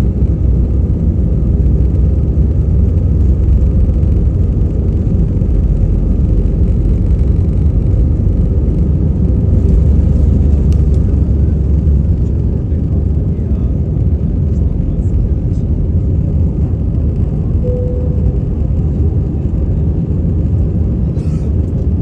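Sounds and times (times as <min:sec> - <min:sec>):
airliner engine rumble in cabin: 0:00.0 - 0:22.0.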